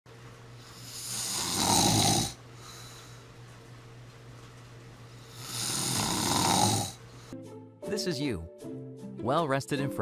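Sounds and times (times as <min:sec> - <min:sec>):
faint steady hum: 0:00.1 - 0:07.4
person snoring: 0:00.6 - 0:03.0, 0:05.2 - 0:07.3.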